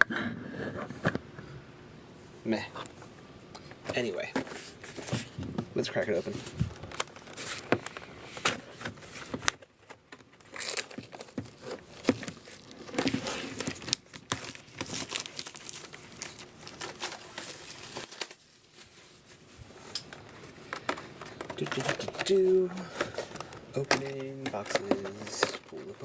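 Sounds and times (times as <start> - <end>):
plastic wrapping crinkling and tearing: 6.2 - 26.0.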